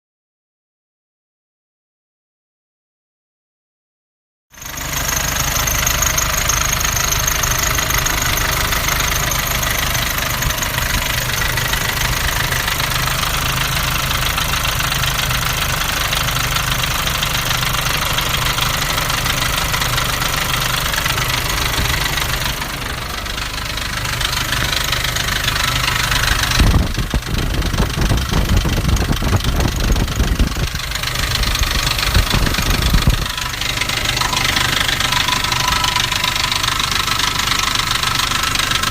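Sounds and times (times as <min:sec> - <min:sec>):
diesel engine knocking rattle: 0:04.6 - 0:38.9
uneven low rumble: 0:24.1 - 0:36.0.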